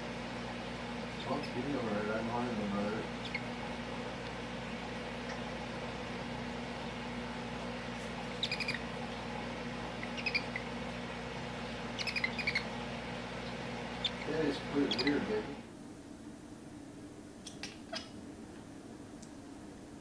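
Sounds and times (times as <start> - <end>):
steady low hum: 0.0 - 20.0
small animal chirping squeaks: 3.2 - 3.5, 8.4 - 8.9, 10.0 - 10.7, 12.0 - 12.7, 14.0 - 15.2, 17.4 - 18.2.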